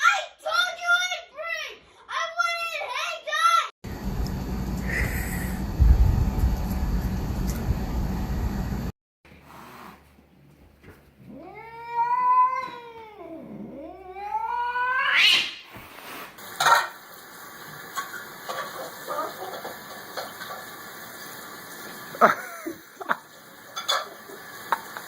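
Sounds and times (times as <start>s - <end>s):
cat yowling: 11.3s - 15.6s.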